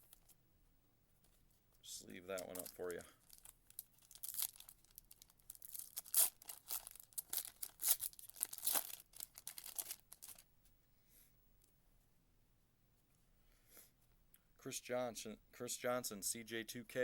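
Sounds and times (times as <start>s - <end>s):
foil wrapper tearing: 2.3s - 10.4s.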